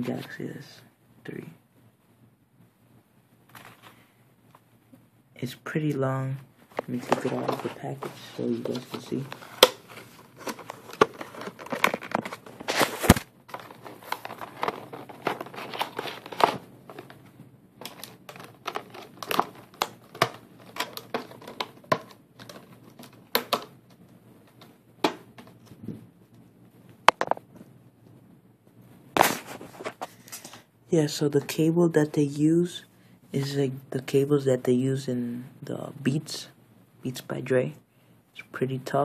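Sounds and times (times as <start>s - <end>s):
plastic packaging crinkling: 6.8s - 17.2s, 17.8s - 23.7s.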